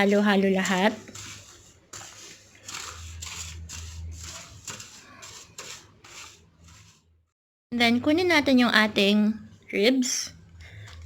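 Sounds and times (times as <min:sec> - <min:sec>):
hands rustling in foil pan: 0:00.0 - 0:07.0.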